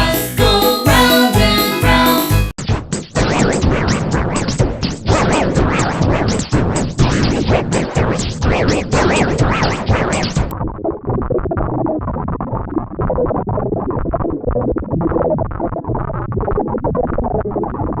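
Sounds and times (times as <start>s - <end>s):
electronic synthesizer music: 0.0s - 11.5s.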